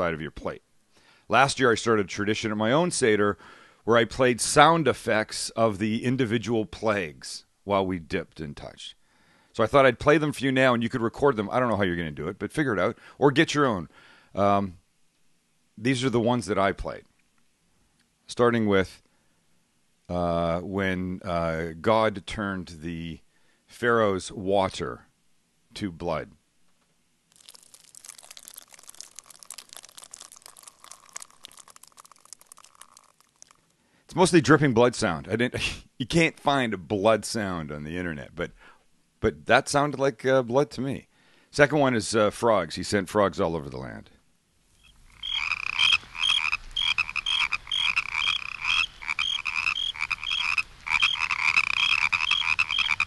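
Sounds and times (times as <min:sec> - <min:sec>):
wet drips and splats: 0:27.3 - 0:33.8, 0:45.2 - 0:53.0
frogs croaking: 0:27.4 - 0:33.0, 0:44.8 - 0:53.0
crickets chirping: 0:44.8 - 0:53.0.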